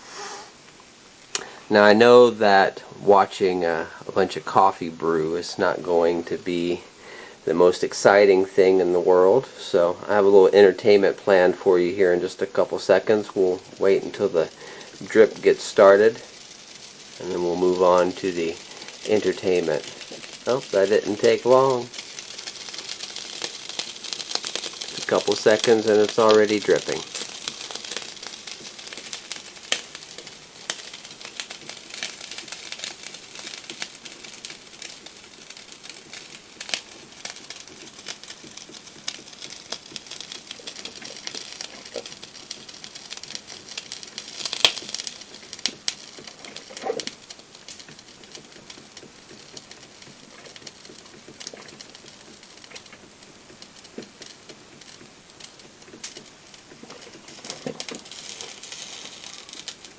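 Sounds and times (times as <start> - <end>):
coffee maker sputtering and dripping: 1.3 - 8.1, 8.9 - 59.9
small clicks: 18.0 - 59.9.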